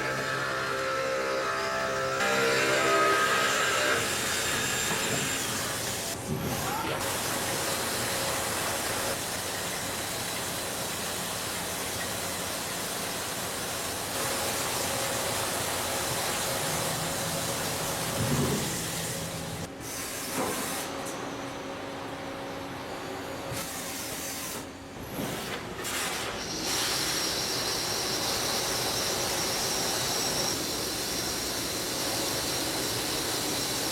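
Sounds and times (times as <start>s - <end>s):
machining cut hiss: 25.8s - 33.9s.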